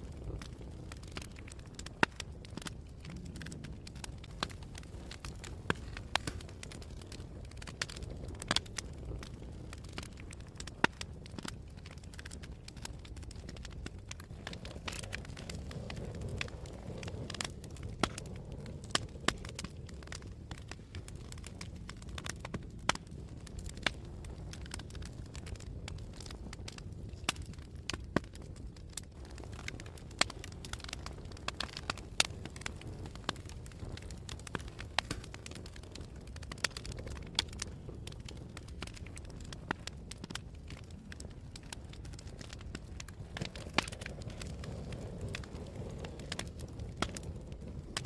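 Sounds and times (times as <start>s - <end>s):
fire crackling and popping: 0.0s - 48.0s
fire flames rumbling: 0.0s - 48.0s.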